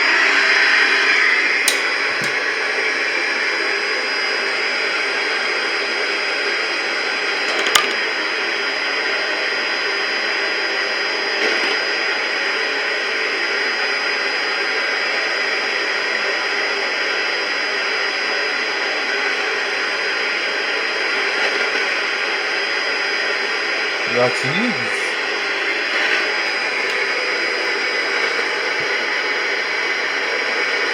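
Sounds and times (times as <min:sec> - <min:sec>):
radio static hiss: 0:24.0 - 0:28.9.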